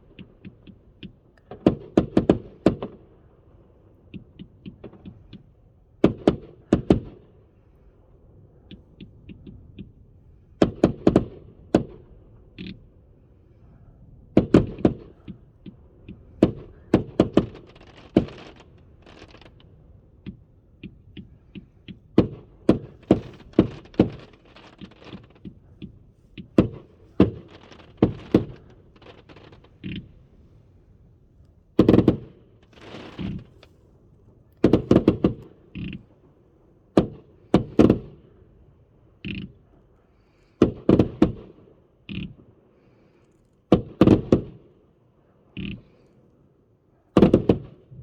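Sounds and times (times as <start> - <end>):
faint firework crackling: 0.0 - 44.4
firework cake shots: 14.5 - 19.7, 20.8 - 30.3, 31.8 - 33.8, 34.6 - 36.0.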